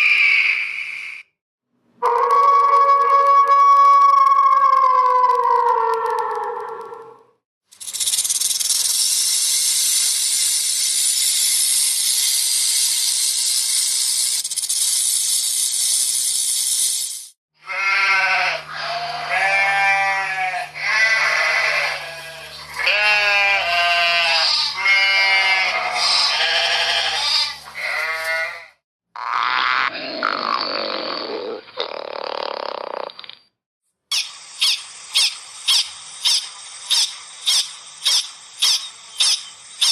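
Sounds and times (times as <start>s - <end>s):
high-pitched hiss: 7.8s - 17.4s
animal bleating: 17.6s - 28.8s.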